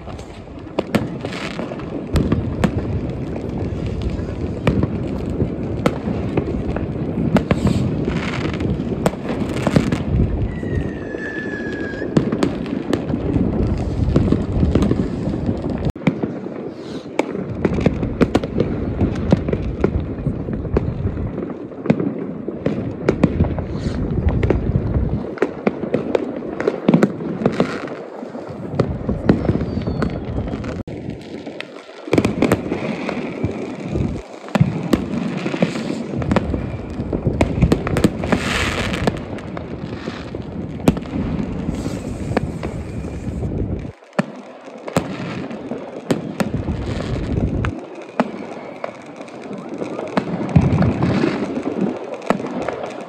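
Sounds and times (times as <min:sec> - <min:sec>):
fireworks bangs and crackling: 0:00.0 - 0:53.0
falling firework whistle: 0:05.8 - 0:15.9, 0:26.6 - 0:53.0.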